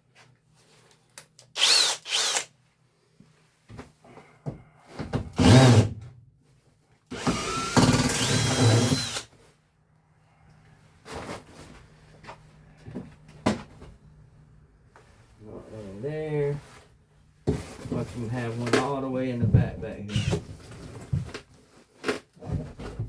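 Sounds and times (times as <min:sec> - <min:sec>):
power drill backing out screws: 0:01.6 - 0:02.5, 0:07.1 - 0:09.3, 0:20.1 - 0:20.4.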